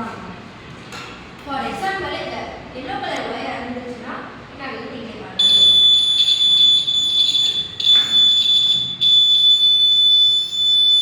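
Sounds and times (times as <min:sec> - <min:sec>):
high-pitched alarm buzzer: 0:05.4 - 0:11.0.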